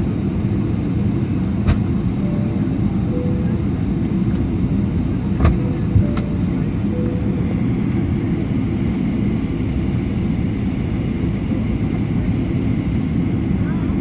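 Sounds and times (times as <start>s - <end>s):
aircraft cabin rumble: 0.0s - 14.0s.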